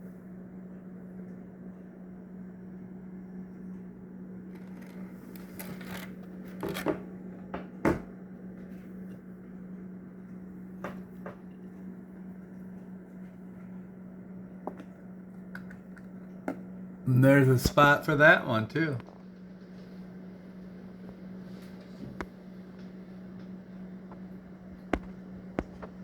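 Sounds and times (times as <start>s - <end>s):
steady low hum: 0.0s - 26.0s
toy cars and plastic case handled: 4.6s - 7.0s.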